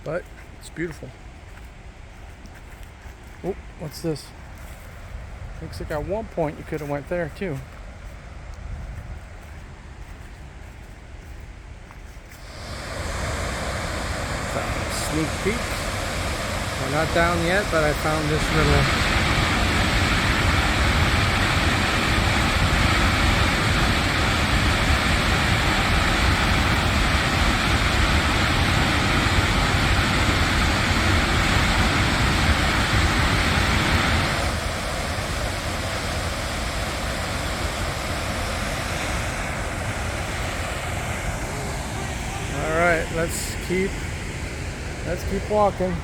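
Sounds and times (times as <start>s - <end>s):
water rushing over waterfall: 12.4s - 46.0s.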